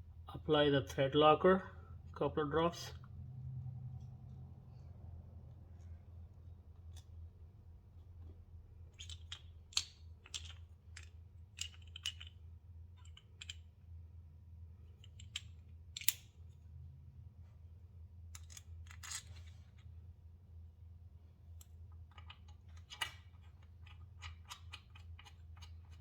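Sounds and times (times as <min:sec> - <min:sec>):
faint low hum: 0:00.0 - 0:26.0.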